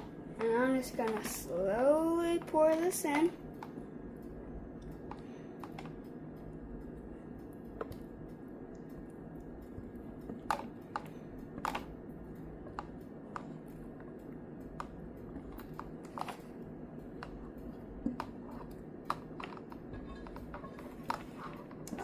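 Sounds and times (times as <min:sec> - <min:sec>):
low hum: 0:00.0 - 0:22.0
utensil scraping a pan: 0:19.9 - 0:21.8.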